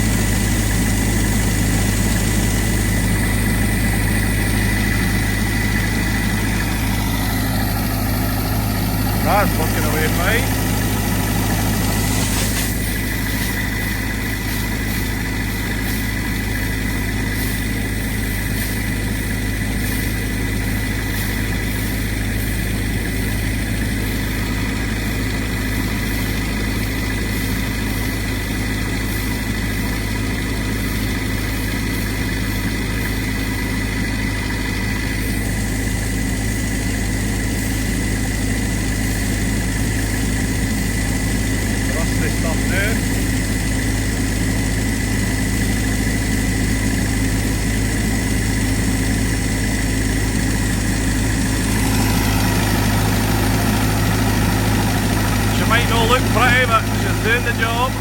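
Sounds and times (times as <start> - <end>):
compressed air hissing: 0.0 - 18.9
compressor engine drone: 0.0 - 58.0.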